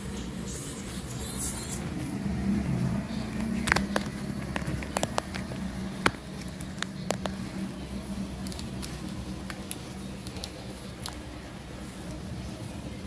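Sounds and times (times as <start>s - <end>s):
steady low hum: 0.0s - 13.0s
laptop clicks and knocks: 3.5s - 7.4s.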